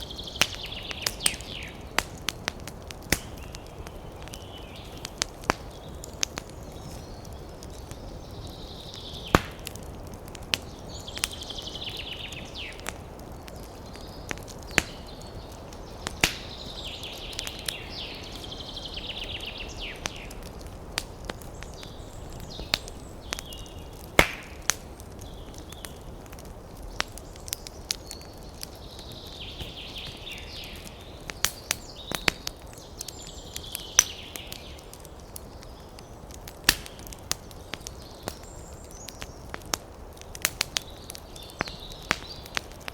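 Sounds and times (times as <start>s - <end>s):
fire hissing: 0.0s - 42.9s
wood fire crackling: 0.0s - 42.9s.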